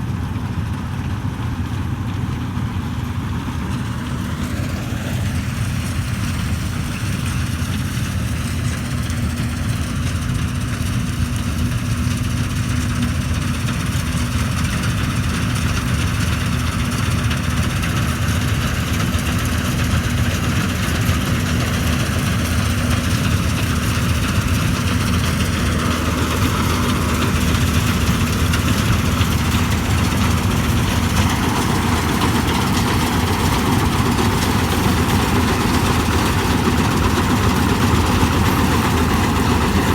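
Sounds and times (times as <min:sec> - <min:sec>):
combine harvester engine drone: 0:00.0 - 0:39.9.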